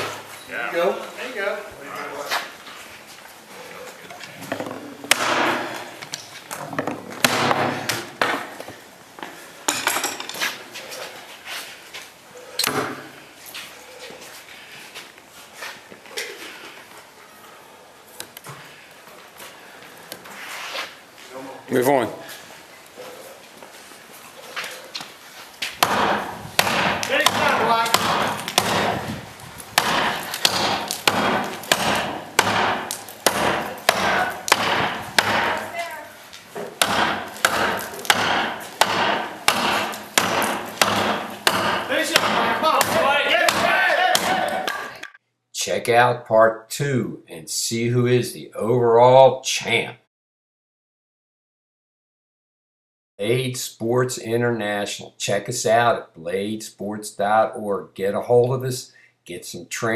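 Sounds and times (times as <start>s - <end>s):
cutting knife chopping targets: 5.0s - 5.9s, 7.1s - 8.5s, 25.8s - 35.7s, 36.6s - 45.0s.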